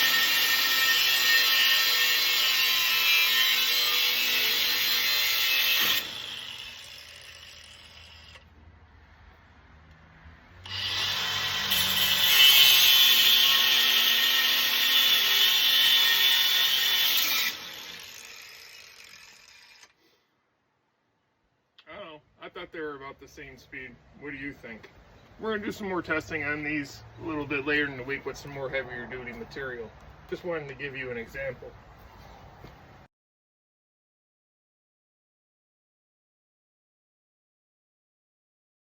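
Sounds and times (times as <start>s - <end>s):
angle grinder cutting metal: 0.0s - 8.5s, 10.6s - 20.0s
grinder disc winding down: 5.7s - 8.5s, 13.4s - 19.9s.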